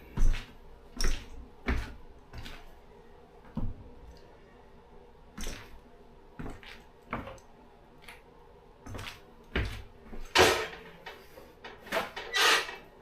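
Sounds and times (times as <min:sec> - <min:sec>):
kitchen knocks and clatters: 0:09.6 - 0:12.3.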